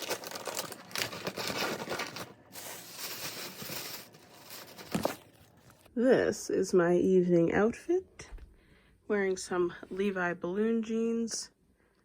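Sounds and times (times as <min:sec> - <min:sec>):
gift wrapping crinkling: 0:00.0 - 0:05.9.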